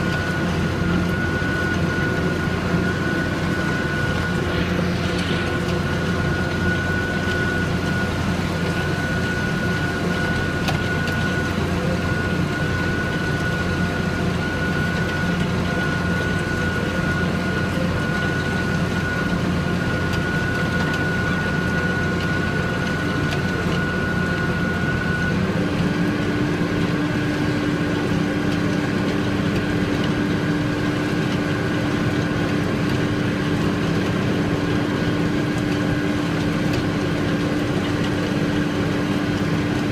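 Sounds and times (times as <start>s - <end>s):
high whine: 0.0s - 21.1s
low hum: 0.0s - 21.1s
tractor engine running: 0.0s - 39.9s.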